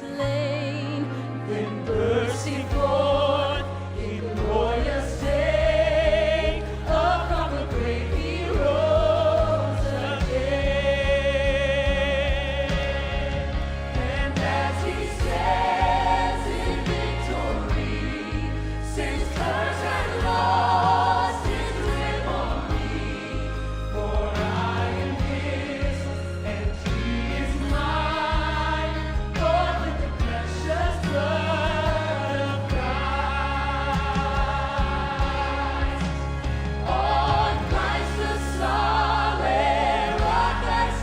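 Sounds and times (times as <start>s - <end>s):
instrumental accompaniment with deep bass: 0.0s - 41.0s
vocal ensemble singing a hymn: 0.0s - 41.0s.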